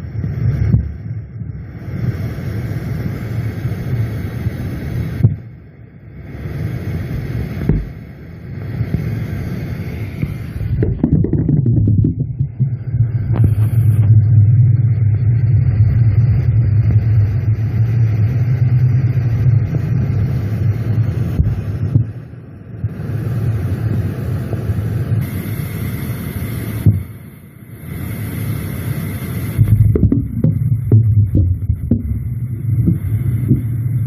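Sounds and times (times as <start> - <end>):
low droning rumble: 0.0 - 34.0.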